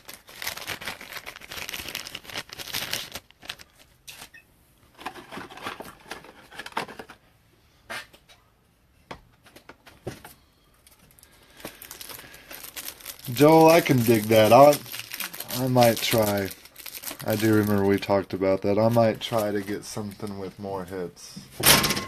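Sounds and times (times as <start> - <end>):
plastic sleeves crinkling: 0.0 - 7.1, 10.8 - 21.1.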